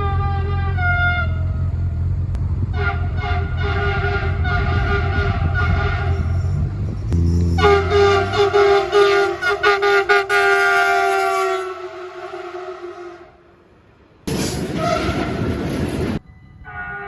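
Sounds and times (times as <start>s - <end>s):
train horn: 0.0s - 1.8s, 2.7s - 6.6s, 7.2s - 13.6s, 14.6s - 15.6s, 16.6s - 17.0s
train rumble: 0.0s - 17.0s.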